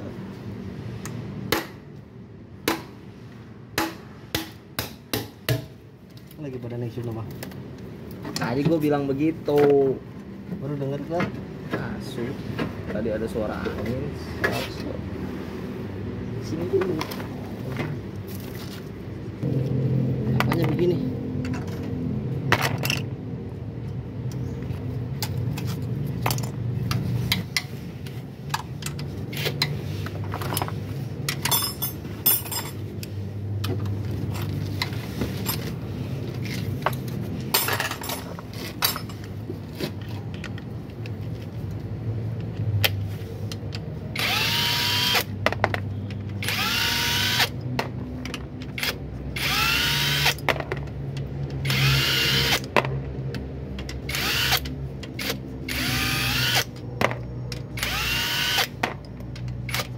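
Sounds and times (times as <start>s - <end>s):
hand tools clinking: 31.3s - 32.9s, 36.9s - 39.3s
power tool motor spinning up: 44.2s - 45.3s, 46.4s - 47.5s, 49.4s - 50.4s, 51.6s - 52.6s, 54.1s - 54.6s, 55.2s - 56.7s, 57.8s - 58.8s.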